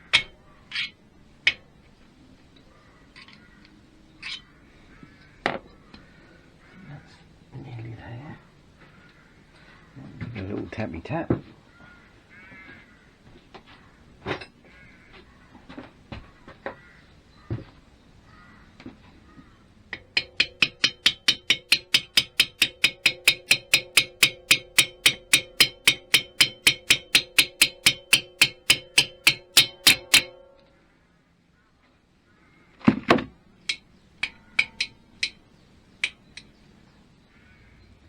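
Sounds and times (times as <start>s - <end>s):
rapid tapping on metal: 0.0s - 0.4s, 19.9s - 30.7s, 33.7s - 36.5s
knocks: 20.0s - 30.6s.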